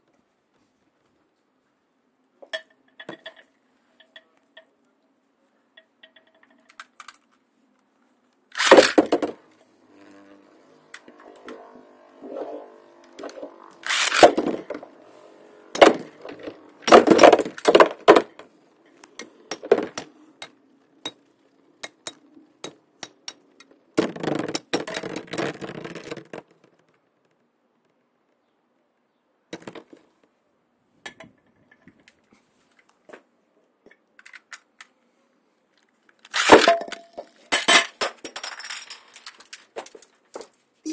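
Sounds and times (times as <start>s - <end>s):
spinning tops clattering: 8.6s - 9.2s, 13.2s - 14.7s
spinning tops clinking: 13.8s - 14.5s.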